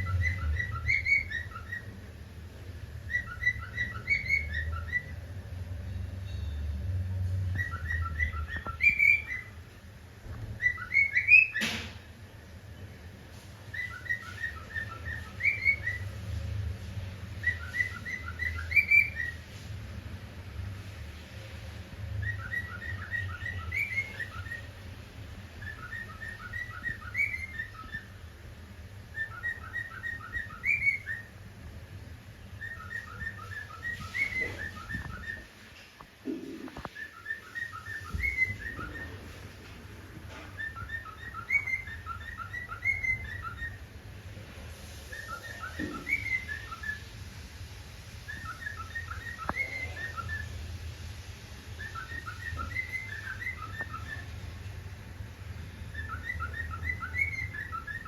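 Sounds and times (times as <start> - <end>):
cockatiel whistling a tune: 0.0 - 2.1, 3.0 - 5.4, 7.4 - 11.9, 12.8 - 16.4, 17.2 - 19.8, 22.1 - 31.5, 32.4 - 35.5, 36.6 - 39.7, 40.3 - 44.0, 44.8 - 50.8, 51.7 - 54.7, 55.6 - 58.0.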